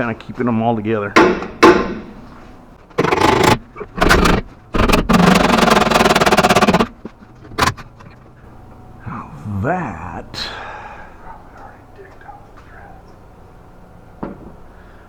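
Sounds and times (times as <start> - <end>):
impact wrench hammering: 1.2 - 2.2, 2.9 - 8.2.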